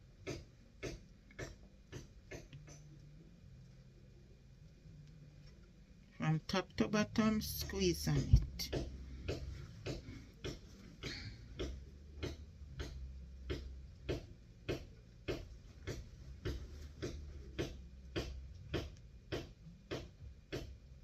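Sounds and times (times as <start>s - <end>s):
steady ticking: 6.5s - 20.8s.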